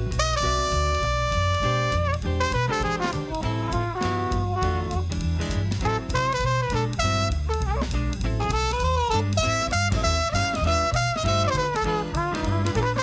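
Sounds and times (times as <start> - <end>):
horn solo melody: 0.0 - 5.1, 5.8 - 13.0
bass line: 0.0 - 13.0
drum kit: 0.0 - 13.0.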